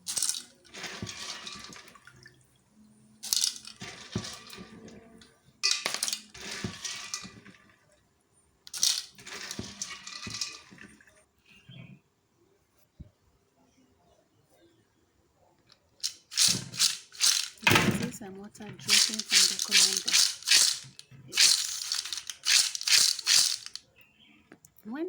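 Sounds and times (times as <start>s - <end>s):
nuts rattling in a colander: 0.0s - 2.0s, 3.2s - 4.9s, 5.6s - 7.6s, 8.7s - 10.8s, 16.0s - 18.1s, 18.8s - 23.8s.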